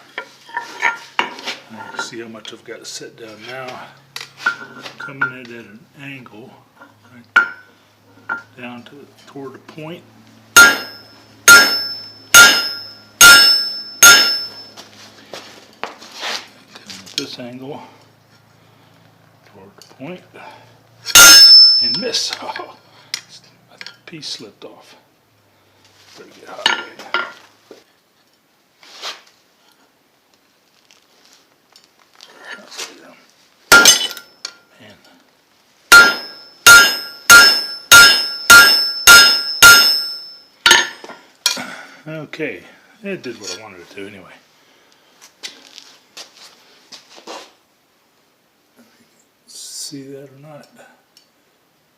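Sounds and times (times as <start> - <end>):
hammer striking steel on anvil: 7.4 - 7.7, 10.6 - 14.8, 21.1 - 22.3, 33.7 - 34.6, 35.9 - 41.2.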